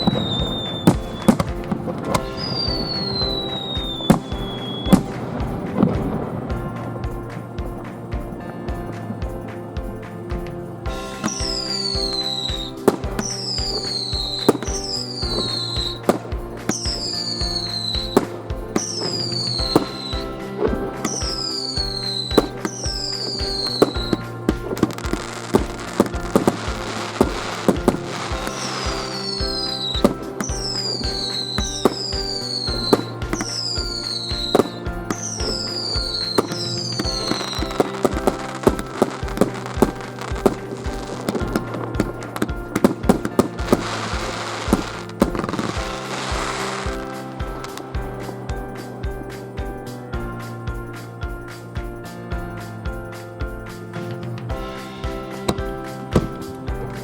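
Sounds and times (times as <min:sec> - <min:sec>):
falling firework whistles: 0:00.0 - 0:06.0, 0:11.1 - 0:48.2, 0:55.0 - 0:57.0
fireworks bangs: 0:00.0 - 0:08.1, 0:10.4 - 0:49.2, 0:54.6 - 0:57.0
music playing: 0:00.0 - 0:57.0.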